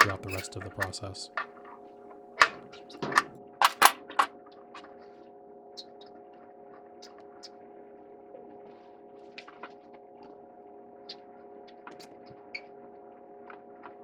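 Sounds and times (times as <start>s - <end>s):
tools clanking on metal fittings: 0.0s - 1.5s.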